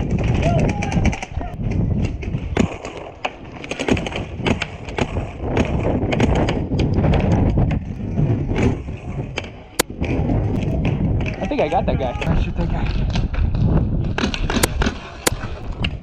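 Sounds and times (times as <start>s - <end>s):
low rumble: 0.0s - 16.0s
paintball markers firing: 2.0s - 7.8s, 14.1s - 15.9s.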